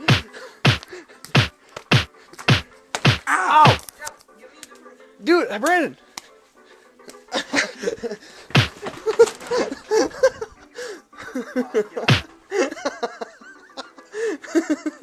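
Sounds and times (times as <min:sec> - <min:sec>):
hard punch impacts: 0:00.0 - 0:00.8, 0:01.4 - 0:03.8, 0:08.6 - 0:08.8.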